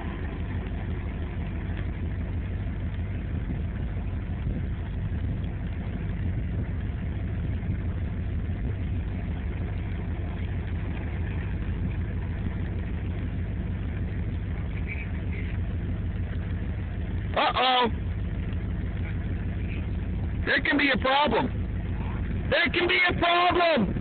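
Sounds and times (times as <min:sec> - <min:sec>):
engine idling: 0:00.0 - 0:24.0.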